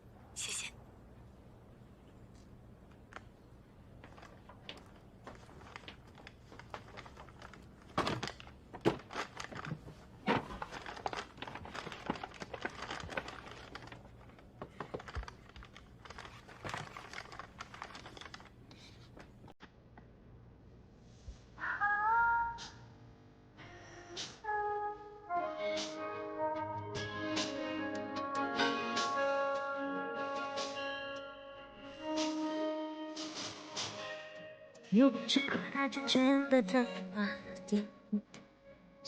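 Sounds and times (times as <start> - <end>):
plastic bag crinkling: 4.0 - 19.5.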